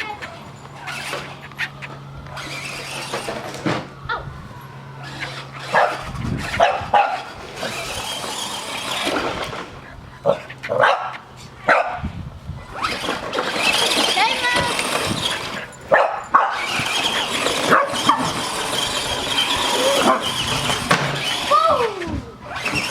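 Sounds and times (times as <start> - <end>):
dogs barking: 0.0 - 3.3, 4.7 - 12.1, 14.7 - 21.5
electric motor humming: 0.0 - 10.6, 11.4 - 22.9.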